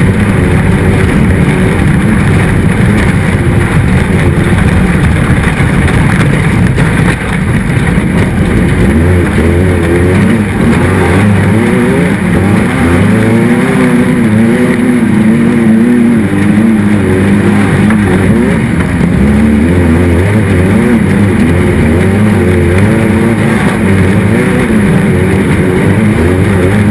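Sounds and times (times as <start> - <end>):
race car engine revving: 0.0 - 26.9.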